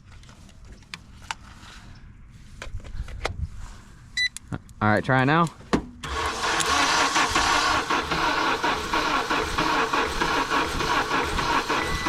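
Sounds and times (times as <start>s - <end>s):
car engine cranking on starter: 6.0s - 12.0s.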